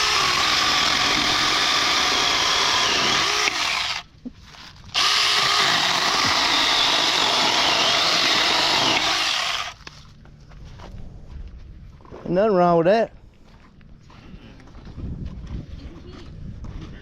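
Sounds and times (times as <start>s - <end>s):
electric chainsaw cutting wood: 0.0s - 4.1s, 4.9s - 9.8s.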